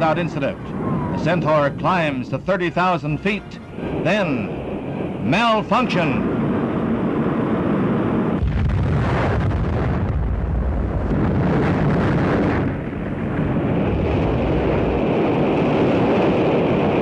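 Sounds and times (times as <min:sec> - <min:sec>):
rocket explosion rumble: 0:03.6 - 0:17.0.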